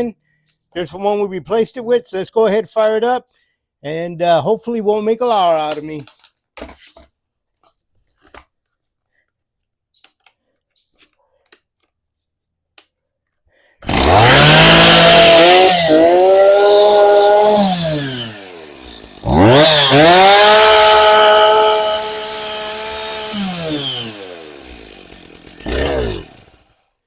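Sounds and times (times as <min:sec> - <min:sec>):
chainsaw revving and idling: 0:13.8 - 0:26.9.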